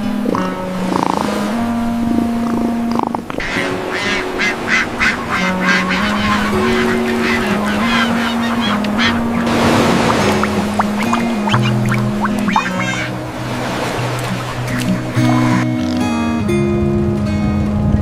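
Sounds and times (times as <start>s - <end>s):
background music: 0.0s - 18.0s
duck quacking rapidly: 2.4s - 15.7s.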